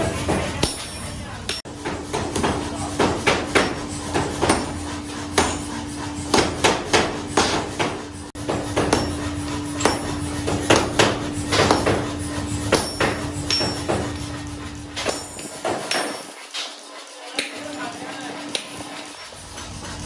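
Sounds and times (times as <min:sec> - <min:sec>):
steady machine hum: 0:00.0 - 0:15.6.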